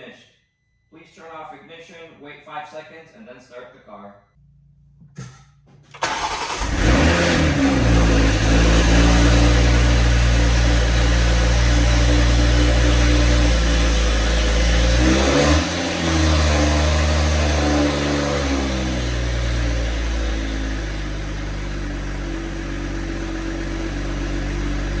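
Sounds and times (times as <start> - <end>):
car engine idling: 6.0 - 25.0.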